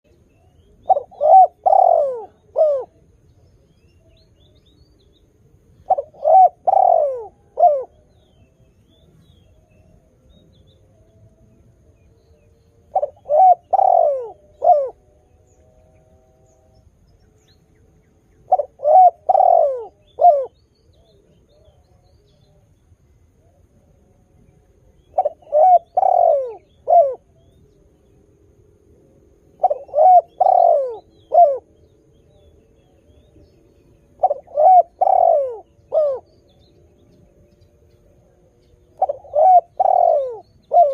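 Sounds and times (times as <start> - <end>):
dove cooing: 0.4 - 3.2, 5.8 - 8.5, 12.9 - 16.7, 18.4 - 22.0, 24.8 - 27.8, 28.9 - 37.1, 37.7 - 40.9.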